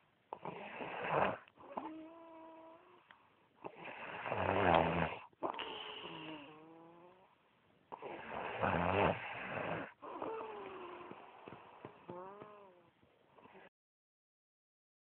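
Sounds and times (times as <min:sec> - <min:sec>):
person snoring: 0:03.7 - 0:07.3, 0:07.9 - 0:12.8.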